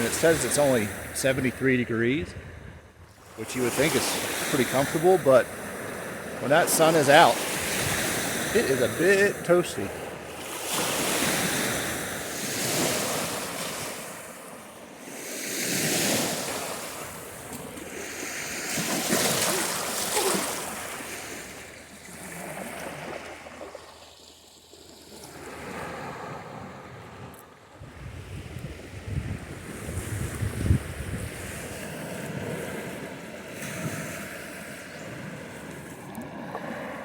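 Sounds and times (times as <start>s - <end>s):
waves washing onto rocks: 0.0s - 1.8s, 3.2s - 23.7s
wind on microphone: 2.2s - 3.1s, 7.4s - 8.7s, 27.8s - 32.8s.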